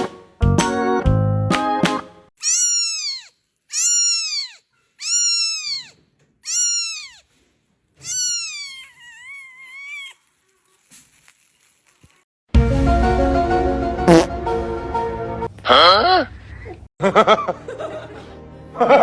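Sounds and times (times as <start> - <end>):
cat meowing: 2.4 - 7.3, 8.0 - 10.3.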